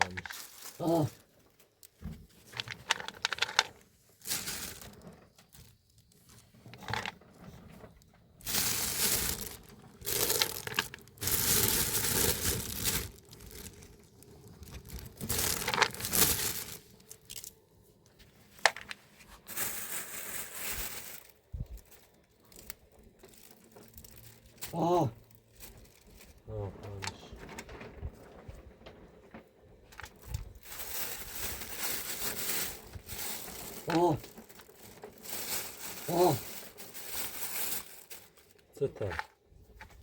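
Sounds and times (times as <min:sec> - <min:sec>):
crinkling and tearing: 0:00.0 - 0:40.0.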